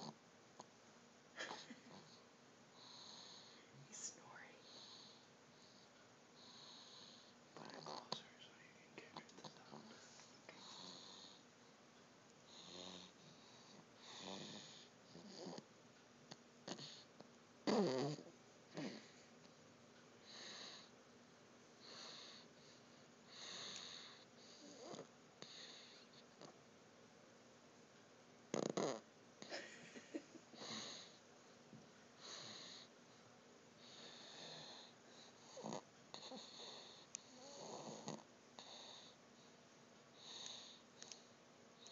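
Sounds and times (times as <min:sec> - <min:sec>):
soft snoring: 0:01.5 - 0:11.4, 0:12.5 - 0:15.7, 0:16.3 - 0:19.3, 0:21.8 - 0:26.6, 0:28.5 - 0:29.1, 0:32.2 - 0:32.9, 0:33.8 - 0:39.5, 0:40.1 - 0:41.9
person snoring: 0:17.7 - 0:18.2.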